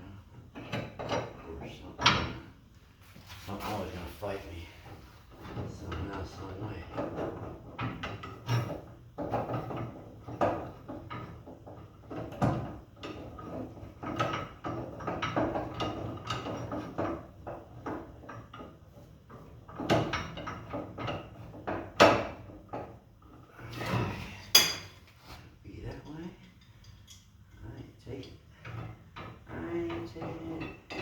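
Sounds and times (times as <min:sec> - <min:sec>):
metal tools clattering: 0:24.4 - 0:25.1
metal clanks: 0:26.0 - 0:31.0.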